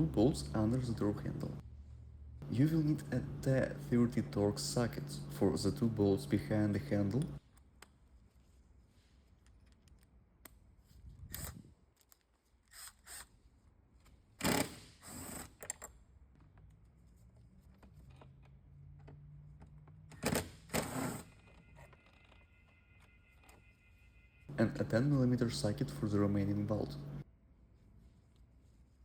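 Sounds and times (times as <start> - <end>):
faint low hum: 0.0 - 10.0, 21.3 - 29.0.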